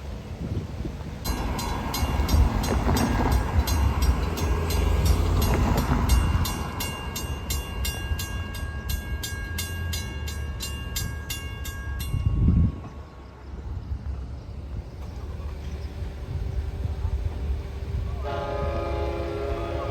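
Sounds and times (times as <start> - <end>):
diesel train rumbling: 0.0 - 19.9
crossing bell ringing: 1.2 - 13.6.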